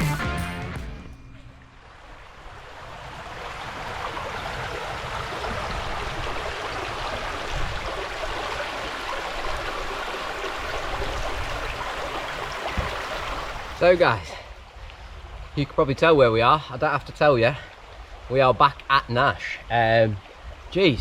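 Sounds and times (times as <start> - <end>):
river water rushing over stones: 1.9 - 14.4.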